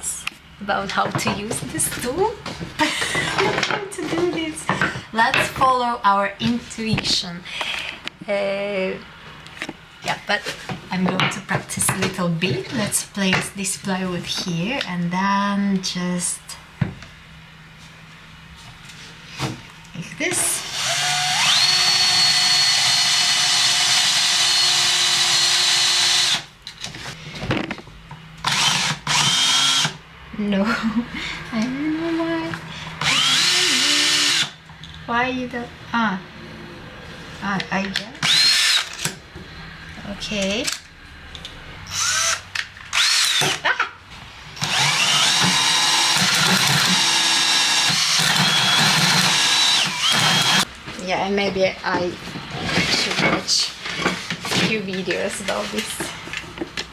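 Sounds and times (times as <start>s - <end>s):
power tool high whine: 20.6s - 26.5s, 33.0s - 34.6s, 38.2s - 38.9s, 44.6s - 50.7s.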